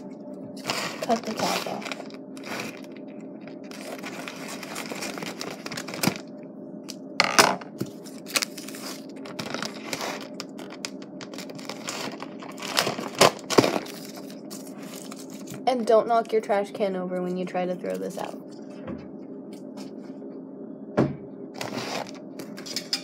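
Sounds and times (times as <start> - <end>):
steady low hum: 0.0 - 23.0
plastic bag crinkling: 0.6 - 6.3, 8.0 - 15.7, 21.6 - 22.2.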